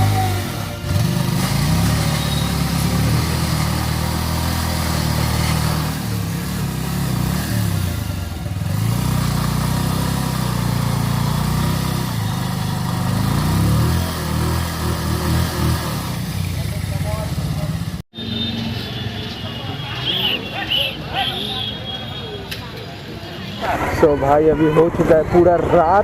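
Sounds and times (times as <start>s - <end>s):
motorcycle engine revving: 0.0s - 19.0s.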